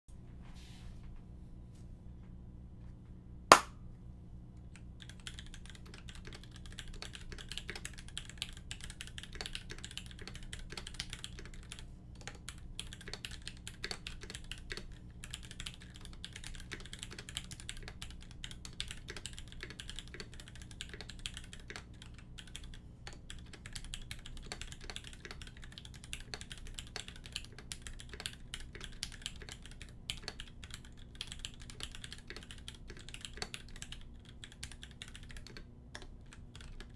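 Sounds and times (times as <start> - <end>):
sharp loud click: 3.5 - 3.7
fast mechanical keyboard typing: 5.0 - 36.9.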